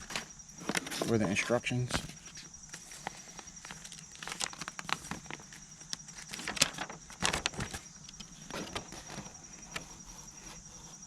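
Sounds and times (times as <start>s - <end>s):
paper rustling and crinkling: 0.0s - 10.9s.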